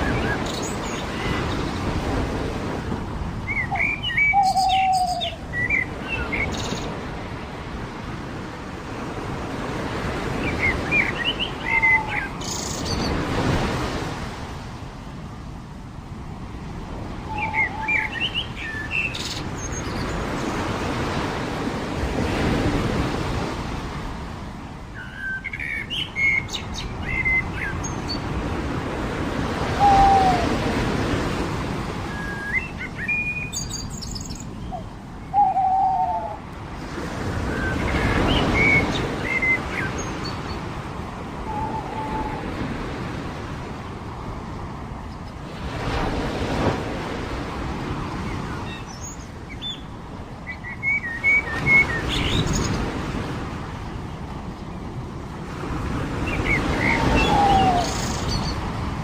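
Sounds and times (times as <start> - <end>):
songbirds twittering: 0.0 - 2.2, 3.3 - 7.4, 9.8 - 13.6, 16.9 - 21.2, 24.9 - 28.8, 31.9 - 43.5, 48.0 - 53.2, 56.1 - 58.9
waves washing onto beach: 0.0 - 59.0.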